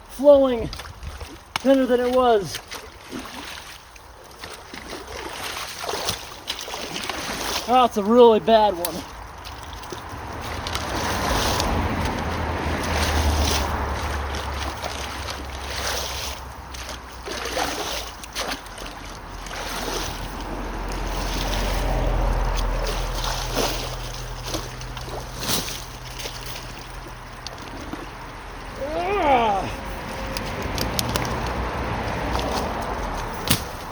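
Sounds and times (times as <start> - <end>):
wind buffeting microphone: 0.0 - 1.5
water rushing and splashing: 0.0 - 33.9
digging knocks and scrapes: 5.2 - 28.2, 30.0 - 33.9.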